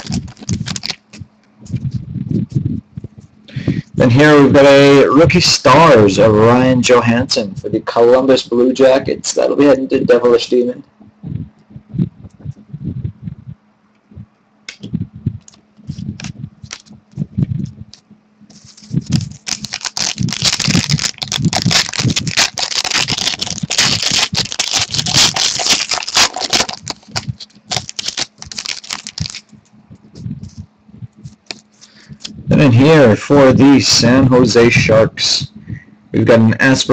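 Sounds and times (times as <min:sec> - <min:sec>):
wrapper tearing and crinkling: 0:00.0 - 0:01.2, 0:16.2 - 0:16.9, 0:18.5 - 0:29.5
trading cards being handled: 0:00.0 - 0:01.9, 0:15.4 - 0:30.6, 0:31.2 - 0:32.3.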